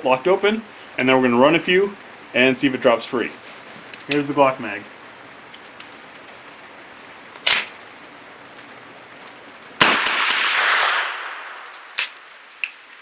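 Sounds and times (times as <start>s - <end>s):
carbine gunshot: 9.8s - 12.3s.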